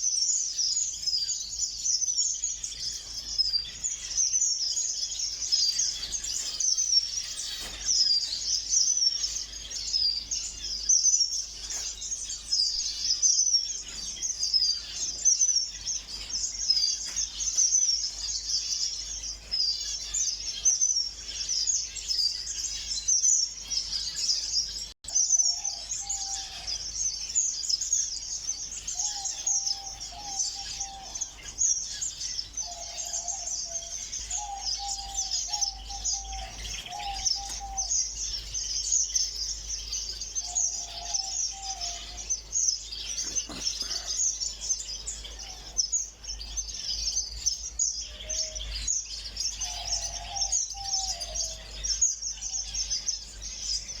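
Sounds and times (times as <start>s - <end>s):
small birds chirping: 0.0s - 54.0s
short lower bird calls: 28.6s - 47.1s.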